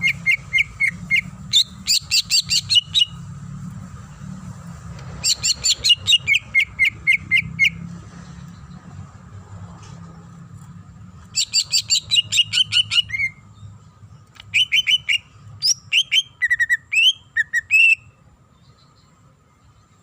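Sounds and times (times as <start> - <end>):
bird singing varied song: 0.0 - 9.2, 11.2 - 20.0.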